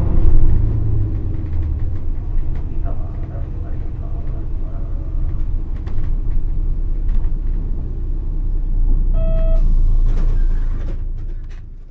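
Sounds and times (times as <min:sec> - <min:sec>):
bus diesel engine rumble: 0:00.0 - 0:11.9
short beep tone: 0:09.1 - 0:09.7.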